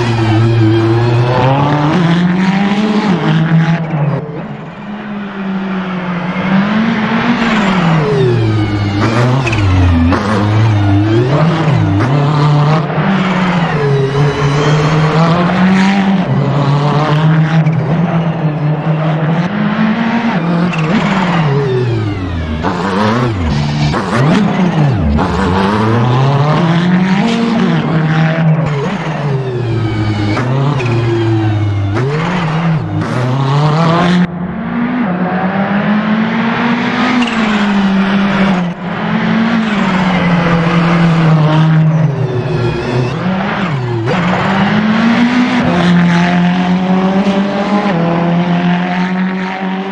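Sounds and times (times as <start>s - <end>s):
race car engine revving: 0.0s - 49.9s.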